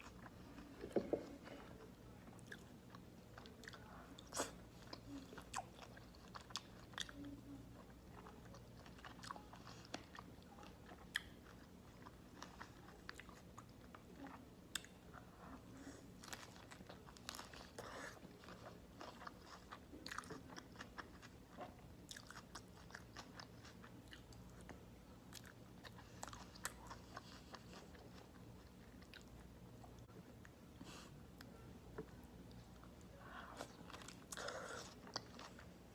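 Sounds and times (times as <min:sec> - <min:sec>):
person chewing crunchy food: 0:00.0 - 0:07.2, 0:07.8 - 0:13.9, 0:15.5 - 0:24.7, 0:25.3 - 0:29.6, 0:33.6 - 0:35.9
faint low hum: 0:00.0 - 0:35.9.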